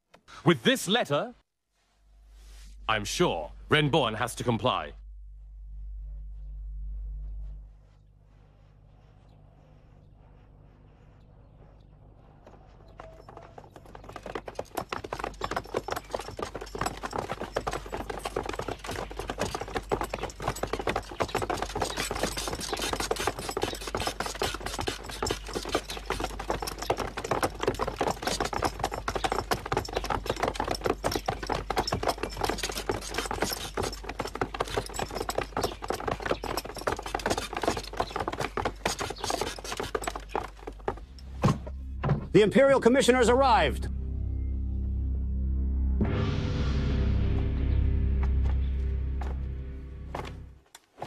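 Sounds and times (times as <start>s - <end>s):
horses' hooves clattering: 8.6s - 42.5s, 48.1s - 51.0s.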